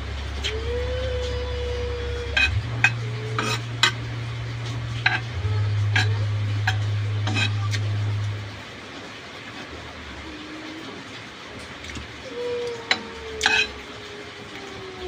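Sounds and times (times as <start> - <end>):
steady low hum: 0.0 - 14.2
spoon clinking on metal pan: 12.9 - 13.7.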